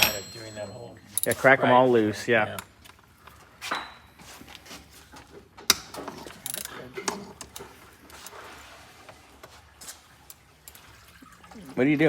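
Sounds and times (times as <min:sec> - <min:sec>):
sharp metal clank: 0:00.0 - 0:01.6
ratchet wrench clicking: 0:01.2 - 0:01.5, 0:06.5 - 0:06.7.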